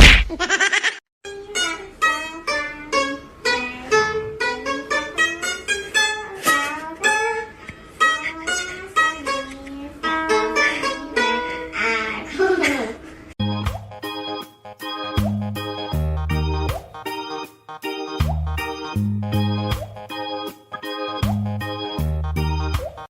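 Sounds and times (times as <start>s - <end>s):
sharp knock: 0.0s - 0.3s
plucked-string music: 1.3s - 12.0s, 13.4s - 23.0s.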